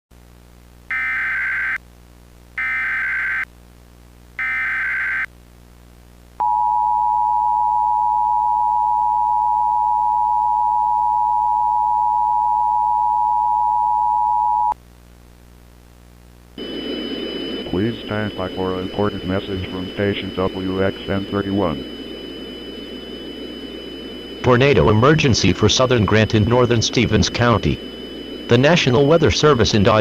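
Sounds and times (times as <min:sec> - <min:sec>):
screechy digital data tones: 0:00.9 - 0:01.8, 0:02.6 - 0:03.5, 0:04.4 - 0:05.3, 0:18.1 - 0:30.0.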